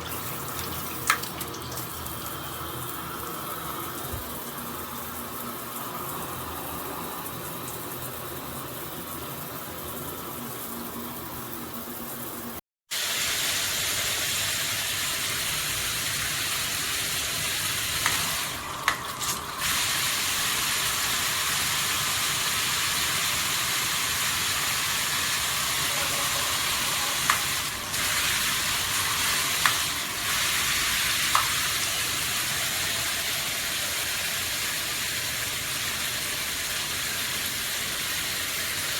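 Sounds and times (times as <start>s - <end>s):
shower head spraying water: 13.1s - 35.0s.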